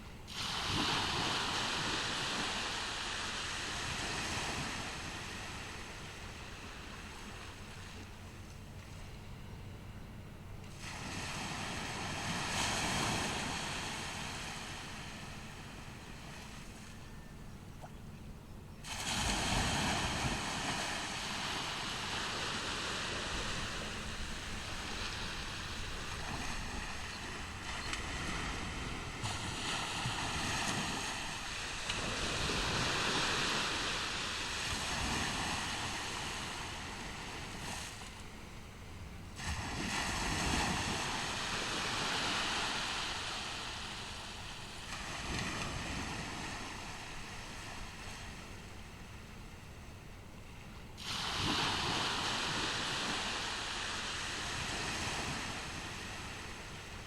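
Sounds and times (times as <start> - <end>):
ocean surf on beach: 0.0 - 18.0, 18.8 - 57.0
wind rumble on microphone: 0.0 - 57.0.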